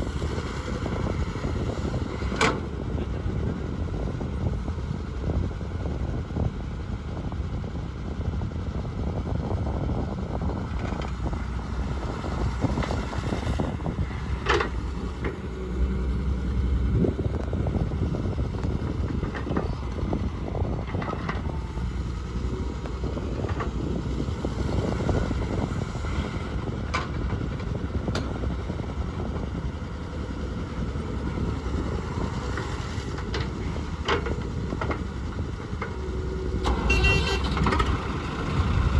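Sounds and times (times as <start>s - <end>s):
diesel engines running: 0.0s - 38.9s.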